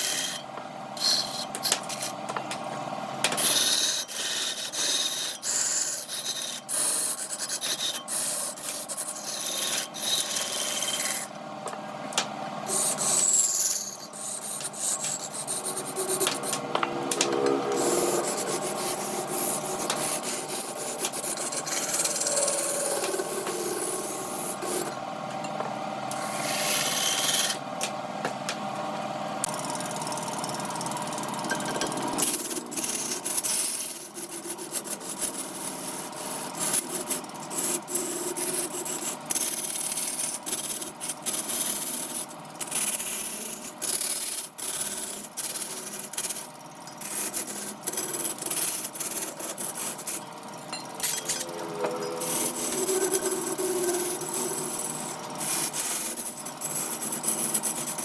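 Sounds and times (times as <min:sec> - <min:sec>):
tool scraping wood on a lathe: 0:00.0 - 0:00.4, 0:01.0 - 0:02.2, 0:03.3 - 0:11.3, 0:12.7 - 0:25.0, 0:26.1 - 0:27.6, 0:51.4 - 0:58.0.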